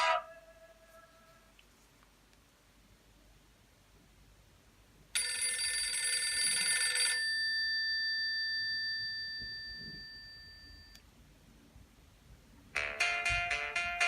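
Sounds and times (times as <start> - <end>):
bell-like phone ringtone: 5.2 - 11.0.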